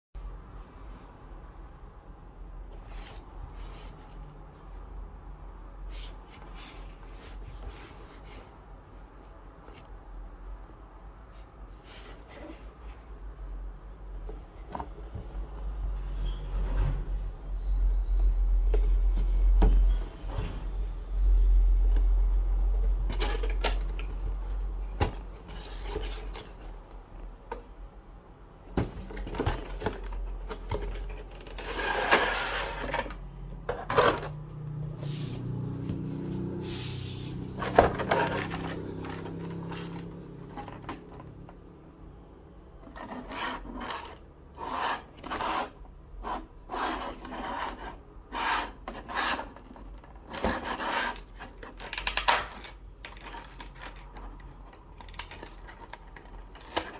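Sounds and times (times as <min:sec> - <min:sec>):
cardboard and plastic packaging rustling: 0:21.8 - 0:28.0, 0:28.6 - 0:36.6, 0:37.2 - 0:41.7, 0:47.0 - 0:56.9.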